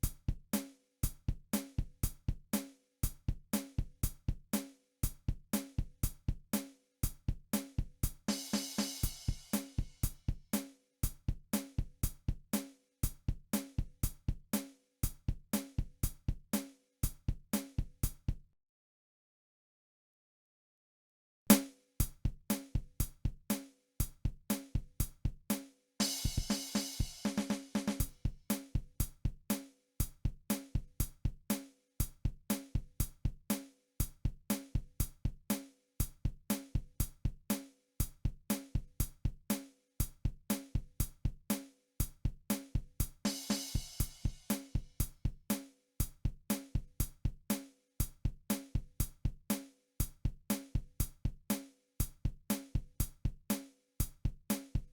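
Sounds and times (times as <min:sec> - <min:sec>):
drum kit beat: 0:00.0 - 0:18.3, 0:21.5 - 0:54.9.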